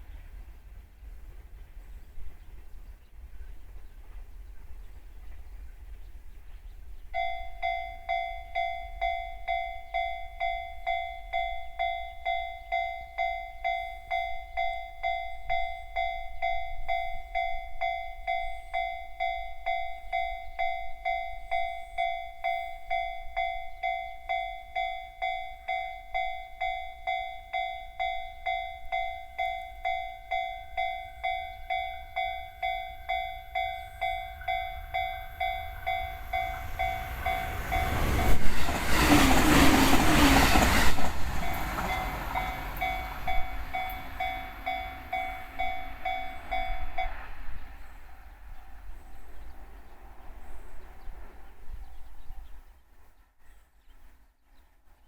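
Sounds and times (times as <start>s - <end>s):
level crossing alarm ringing: 7.2s - 38.5s, 39.1s - 47.0s.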